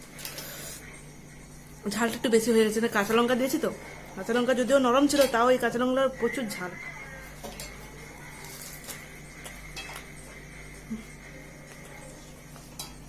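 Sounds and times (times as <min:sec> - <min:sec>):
steady low hum: 0:00.0 - 0:13.0
tableware clinking: 0:07.3 - 0:10.2.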